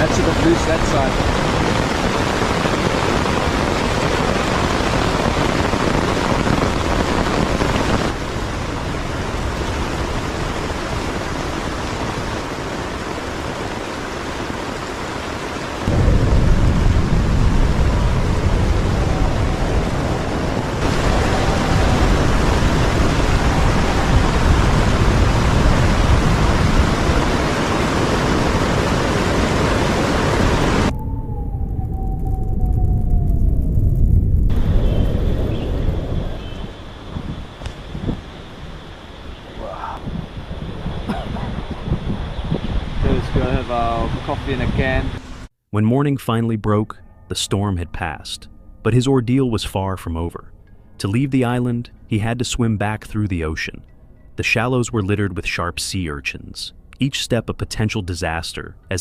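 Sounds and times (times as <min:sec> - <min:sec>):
deep thunder rumble: 0:00.0 - 0:12.4, 0:15.8 - 0:38.3
rain pounding on a tarp: 0:00.0 - 0:30.9
wind gusting: 0:00.0 - 0:45.5.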